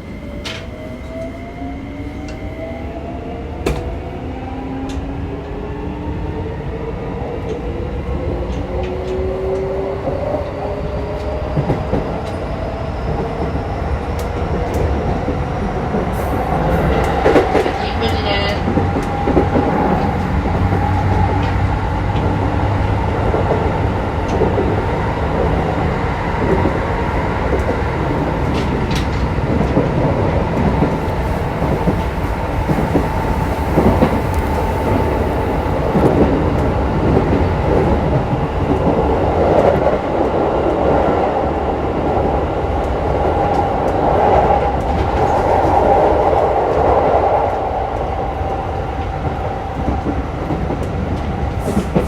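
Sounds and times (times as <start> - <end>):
electric train rumbling: 0.0 - 52.0.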